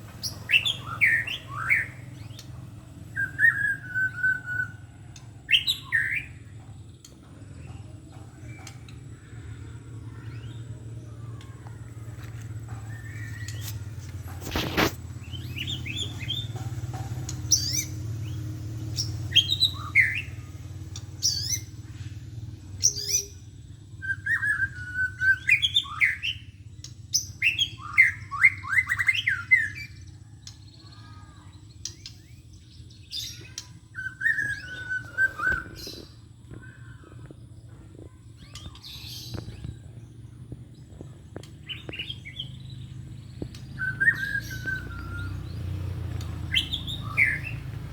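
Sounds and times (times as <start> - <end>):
bird whistling and chirping: 0.2 - 2.4, 3.2 - 4.9, 5.5 - 6.4, 19.0 - 20.5, 21.2 - 21.7, 22.8 - 30.0, 33.0 - 37.1, 41.6 - 47.7.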